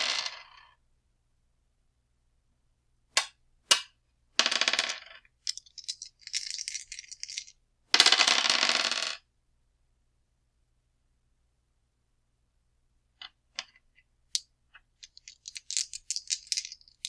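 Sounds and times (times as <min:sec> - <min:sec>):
dice rattling and clacking: 0:03.7 - 0:09.2, 0:14.8 - 0:17.0.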